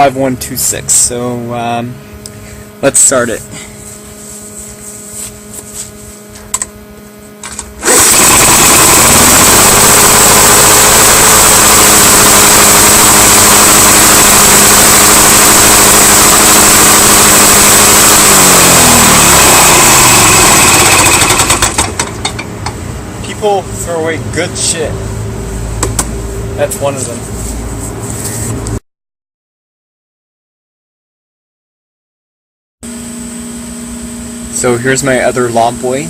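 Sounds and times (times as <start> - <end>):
lawn mower engine running: 7.4 - 24.1.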